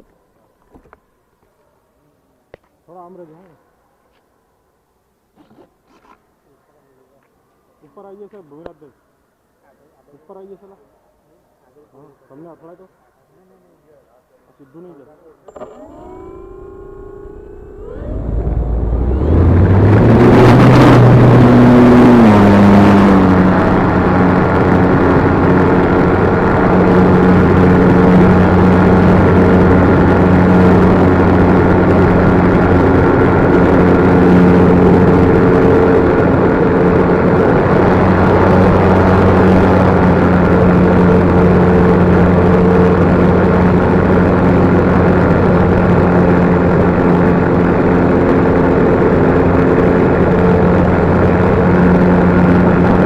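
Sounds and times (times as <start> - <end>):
electric motor and propeller drone: 15.5 - 53.0.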